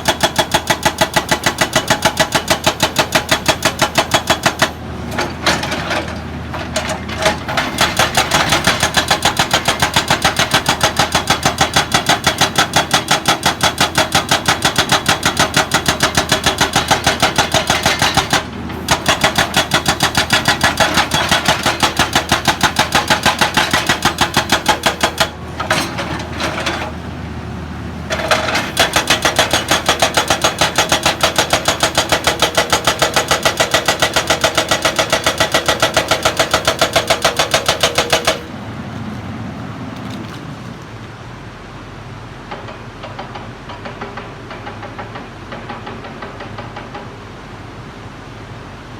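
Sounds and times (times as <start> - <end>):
excavator hammering: 0.0 - 27.0, 28.0 - 38.6, 42.5 - 47.2
low engine hum: 38.4 - 42.3.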